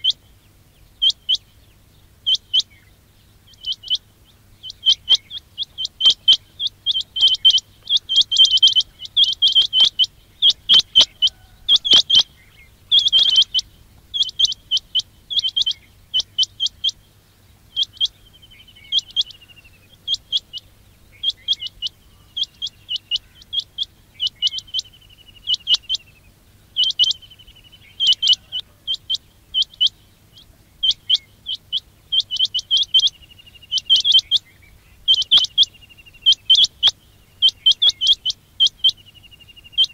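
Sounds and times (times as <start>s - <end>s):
quail calling: 0.0s - 39.9s
falling bird trills: 4.6s - 17.0s.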